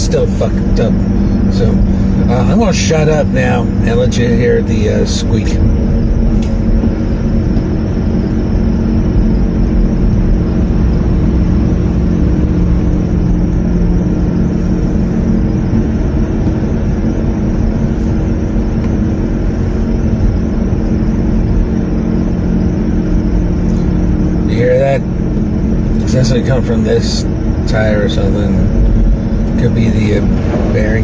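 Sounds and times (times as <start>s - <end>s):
car running with steady hum: 0.0s - 31.0s
tire squeak: 13.9s - 16.7s, 28.9s - 31.0s.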